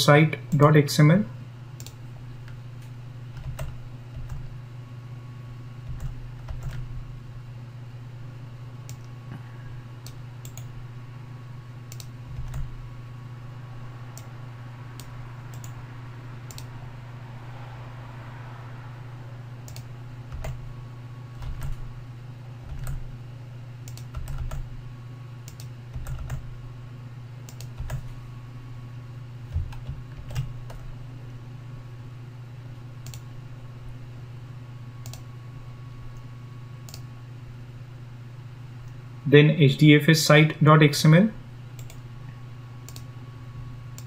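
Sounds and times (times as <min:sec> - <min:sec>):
steady low hum: 0:00.0 - 0:44.0
keyboard keys clicking: 0:03.4 - 0:04.4, 0:05.9 - 0:06.9, 0:11.9 - 0:12.7, 0:21.4 - 0:21.9, 0:22.7 - 0:23.0, 0:23.8 - 0:24.7, 0:25.4 - 0:26.4, 0:27.5 - 0:28.1.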